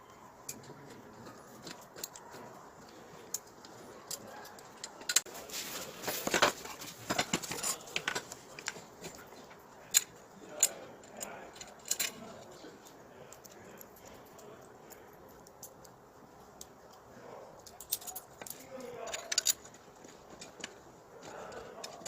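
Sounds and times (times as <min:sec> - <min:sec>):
hard parts clicking and clinking: 0:00.0 - 0:22.0
clattering and scraping: 0:04.9 - 0:12.6.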